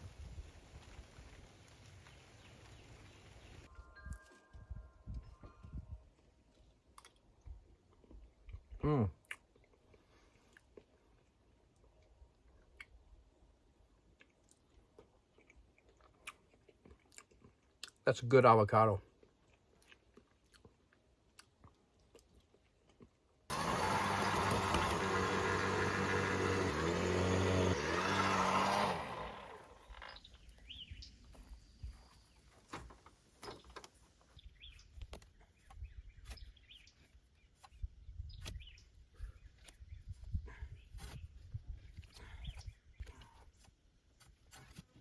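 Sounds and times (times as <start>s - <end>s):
engine running loudly: 23.5s - 29.8s.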